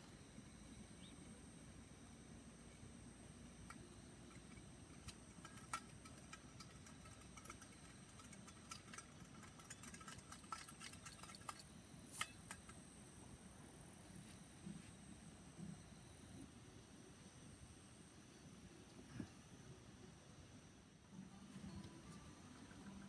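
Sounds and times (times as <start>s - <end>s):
small clicks and ticks: 3.6s - 12.8s.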